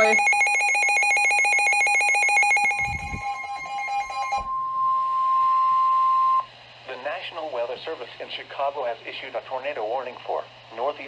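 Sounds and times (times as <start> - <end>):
electronic alarm trilling: 0.0 - 6.5
steady warning alarm tone: 0.0 - 6.5.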